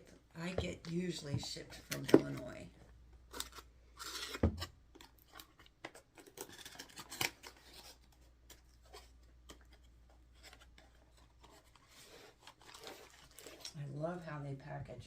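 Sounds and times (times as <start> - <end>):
packaging rustling: 3.3 - 13.8.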